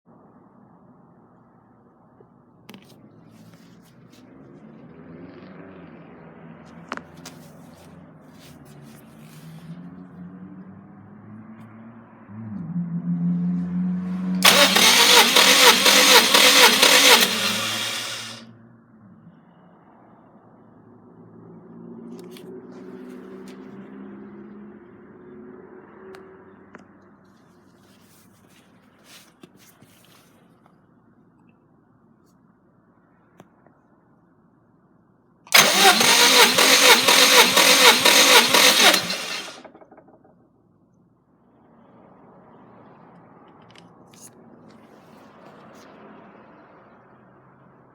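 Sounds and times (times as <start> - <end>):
car engine running loud: 14.2 - 18.4, 35.5 - 39.7.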